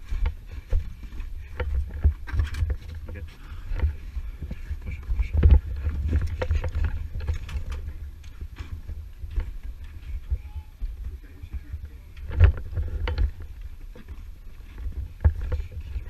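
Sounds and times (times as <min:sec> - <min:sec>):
camera jostling rumble: 0:00.0 - 0:16.0
sharp clicks and knocks: 0:12.1 - 0:16.0.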